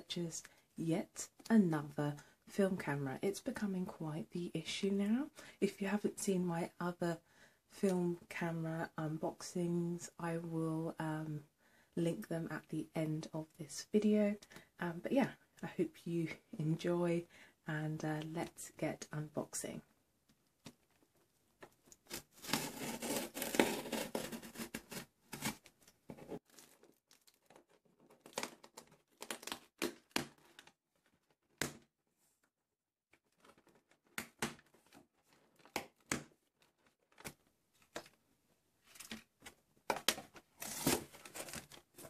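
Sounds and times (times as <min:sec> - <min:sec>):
paper and cardboard tearing: 0:22.0 - 0:25.7, 0:40.6 - 0:41.8.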